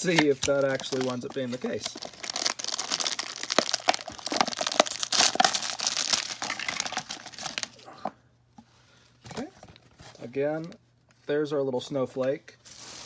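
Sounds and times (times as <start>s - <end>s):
plastic packaging crinkling: 0.0s - 7.8s, 12.6s - 13.0s.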